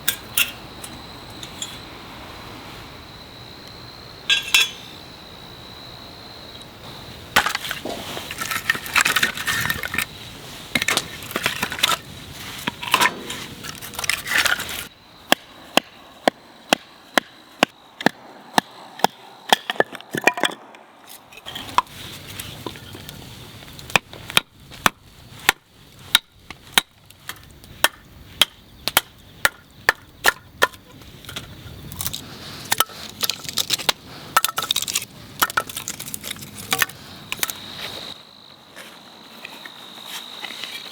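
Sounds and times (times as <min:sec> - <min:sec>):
dry sticks snapping: 0:31.3 - 0:37.6.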